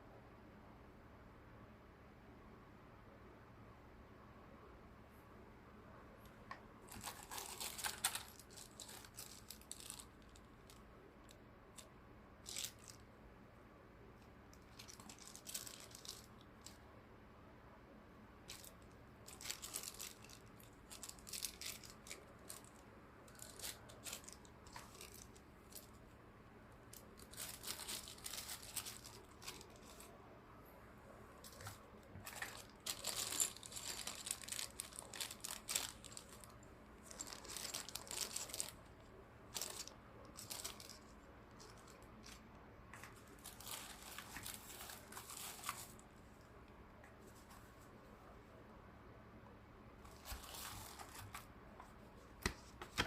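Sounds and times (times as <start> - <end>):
wrapping rustling: 6.8 - 13.1, 14.6 - 16.8, 18.5 - 26.1, 26.8 - 30.2, 31.4 - 46.2, 50.0 - 53.0.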